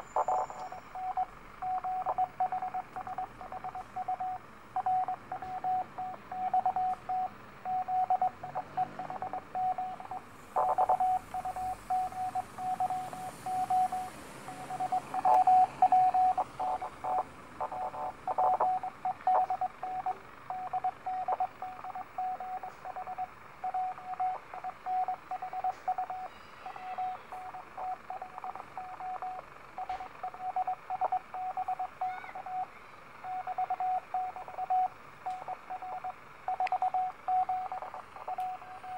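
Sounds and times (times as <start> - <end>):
static crackles: 0.0 - 32.1, 33.1 - 38.9
morse code beat tone: 0.0 - 38.9
radio hiss: 9.9 - 20.4.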